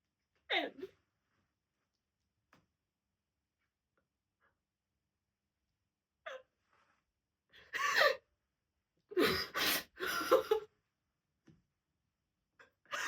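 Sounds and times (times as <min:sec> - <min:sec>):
woman sobbing: 0:09.2 - 0:10.7.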